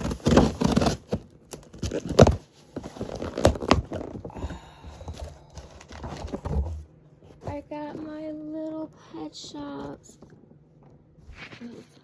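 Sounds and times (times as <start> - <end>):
packaging rustling: 0.0 - 6.8.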